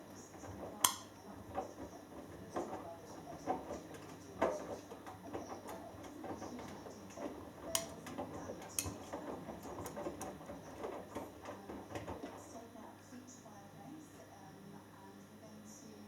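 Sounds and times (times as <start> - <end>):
soft knocks and rustling: 0.0 - 12.6
washing machine drum tumbling: 0.0 - 13.0
faint hum: 0.0 - 16.0
sharp clicks: 0.6 - 1.1.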